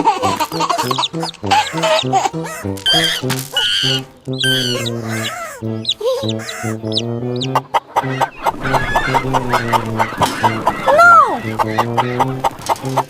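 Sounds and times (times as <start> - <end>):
chicken clucking: 0.0 - 13.0
steady pitched tones: 0.0 - 13.0.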